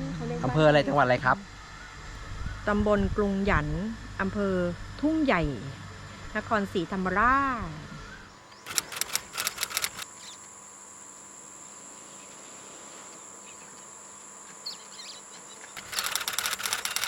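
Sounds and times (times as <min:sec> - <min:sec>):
insects droning: 0:00.0 - 0:17.0
rapid clicking bursts: 0:08.6 - 0:10.1, 0:15.8 - 0:17.0.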